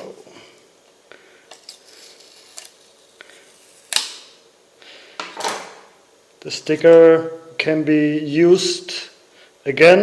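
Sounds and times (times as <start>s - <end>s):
knife scraping a sticker: 1.6s - 4.1s.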